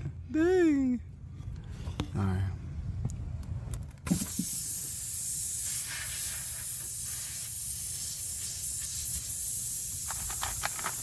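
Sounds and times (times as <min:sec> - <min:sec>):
air hissing from tire: 0:04.1 - 0:11.0.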